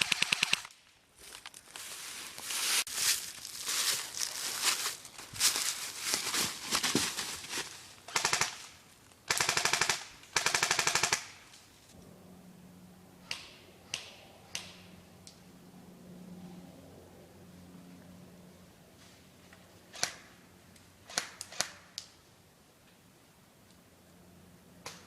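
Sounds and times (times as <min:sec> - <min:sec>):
airsoft guns firing: 0:08.1 - 0:08.7, 0:09.3 - 0:11.5.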